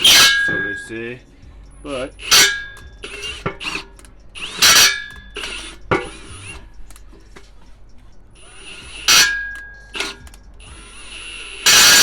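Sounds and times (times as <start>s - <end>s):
tools clanking on steel: 0.0s - 1.2s, 2.2s - 10.6s, 11.7s - 12.0s.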